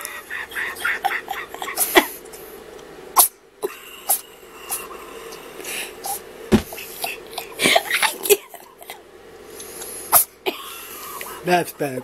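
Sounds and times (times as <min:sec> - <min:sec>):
kitten sneezing: 0:03.2 - 0:03.4.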